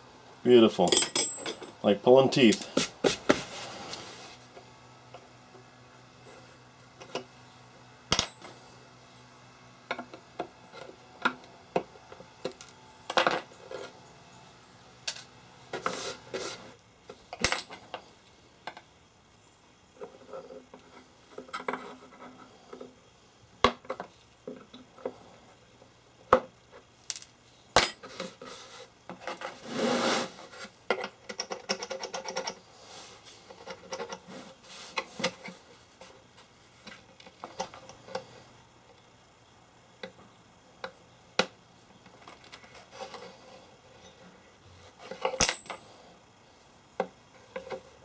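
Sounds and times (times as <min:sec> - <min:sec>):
short scraping rasp: 0:29.5 - 0:30.7.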